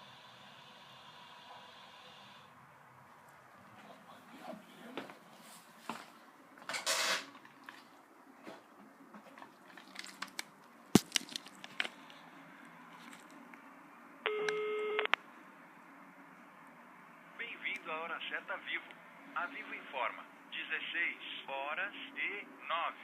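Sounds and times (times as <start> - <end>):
faint clicks and rustles: 3.0 - 13.7.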